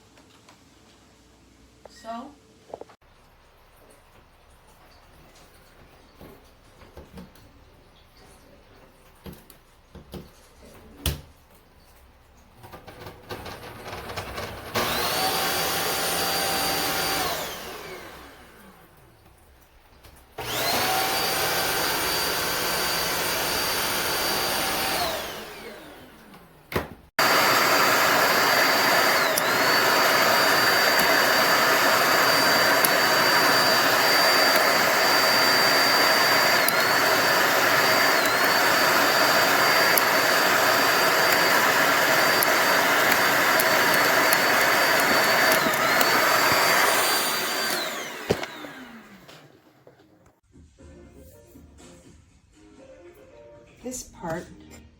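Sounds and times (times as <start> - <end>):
vacuum motor whining: 12.9 - 18.8, 20.4 - 50.3
clicks: 27.2 - 50.0.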